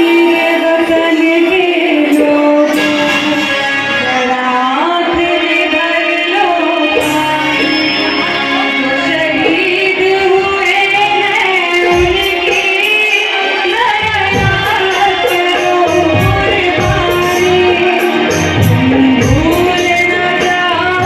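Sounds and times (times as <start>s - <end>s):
musical accompaniment: 0.0s - 21.0s
drum strokes: 6.9s - 9.8s, 11.7s - 21.0s
girl singing: 8.8s - 21.0s.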